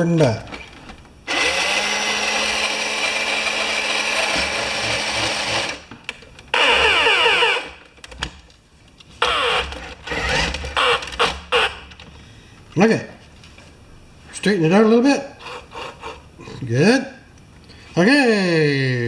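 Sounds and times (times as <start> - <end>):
toy electric motor whining: 1.3 - 5.8, 6.5 - 7.8, 9.2 - 11.9.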